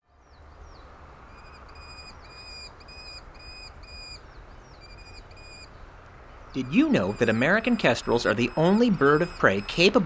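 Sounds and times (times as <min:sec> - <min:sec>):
bird calling whistled notes: 0:01.3 - 0:05.7, 0:06.5 - 0:09.9.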